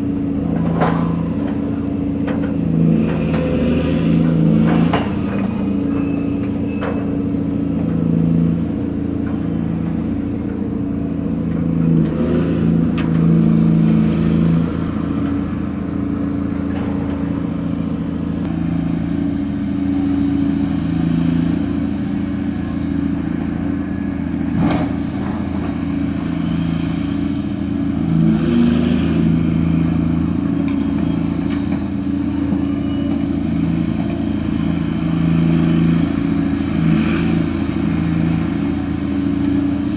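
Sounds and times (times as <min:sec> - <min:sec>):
diesel crane machinery running: 0:00.0 - 0:39.9.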